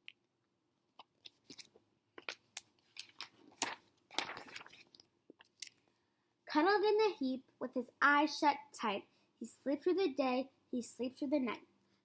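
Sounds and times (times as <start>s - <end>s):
paper pages turning and rustling: 2.8s - 5.1s.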